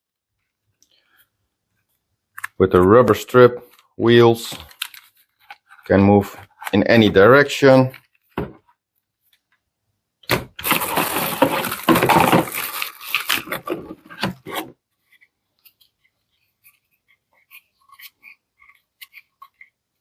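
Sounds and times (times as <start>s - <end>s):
plastic packaging crinkling and tearing: 4.5s - 6.8s, 10.6s - 14.7s.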